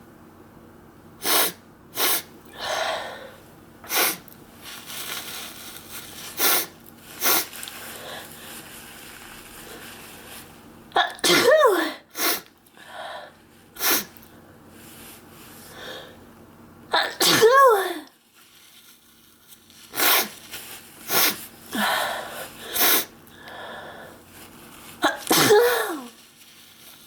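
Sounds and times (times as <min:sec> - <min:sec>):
person sneezing: 0:01.2 - 0:03.3, 0:03.9 - 0:04.2, 0:06.4 - 0:07.5, 0:11.0 - 0:12.5, 0:13.8 - 0:14.1, 0:16.9 - 0:18.1, 0:19.9 - 0:20.3, 0:21.1 - 0:23.1, 0:25.0 - 0:26.2.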